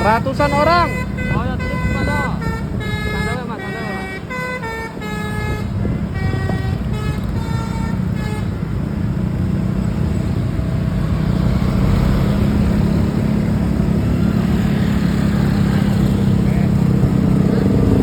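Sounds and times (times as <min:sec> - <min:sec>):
bus horn playing a tune: 0:00.0 - 0:09.0
bus engine and road noise: 0:00.0 - 0:18.0.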